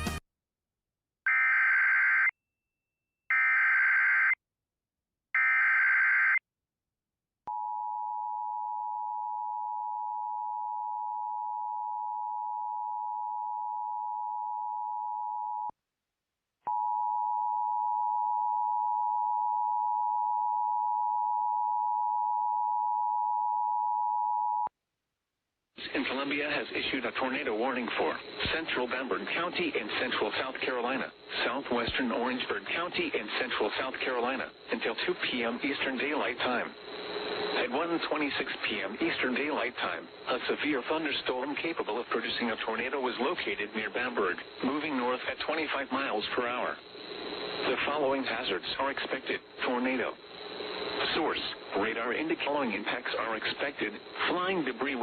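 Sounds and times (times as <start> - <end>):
data bursts: 27.7 - 55.0.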